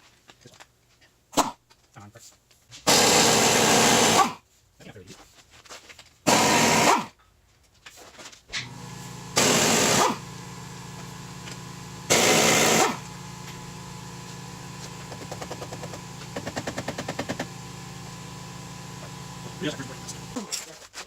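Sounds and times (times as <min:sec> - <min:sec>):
pneumatic impact wrench bursts: 0:02.9 - 0:04.4, 0:06.3 - 0:07.1, 0:08.5 - 0:20.6
steady low hum: 0:08.6 - 0:20.4.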